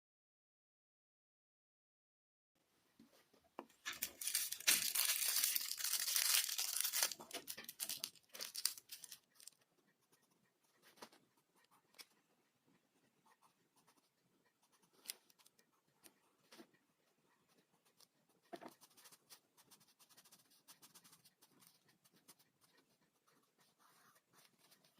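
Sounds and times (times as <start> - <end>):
tearing and crinkling: 3.8 - 9.5.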